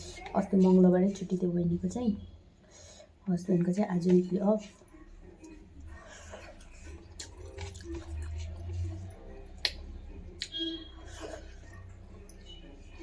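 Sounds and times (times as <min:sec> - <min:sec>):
person chewing food: 0:05.4 - 0:13.0.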